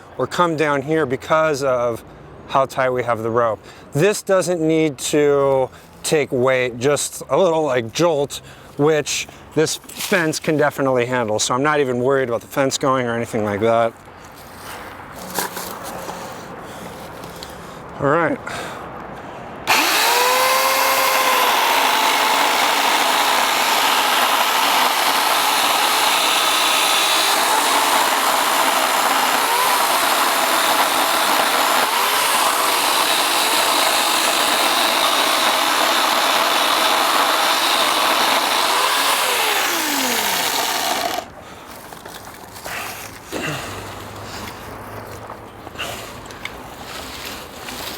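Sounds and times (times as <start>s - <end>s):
chainsaw cutting wood: 19.7s - 41.4s.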